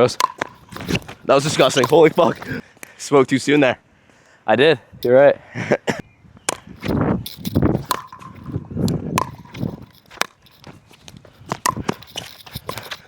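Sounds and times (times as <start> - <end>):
shoe squeak: 0.0 - 2.6, 6.5 - 13.0
paddles striking plastic ball: 0.0 - 2.9, 6.5 - 13.0
shoes shuffling on court: 0.0 - 2.9, 6.5 - 13.0.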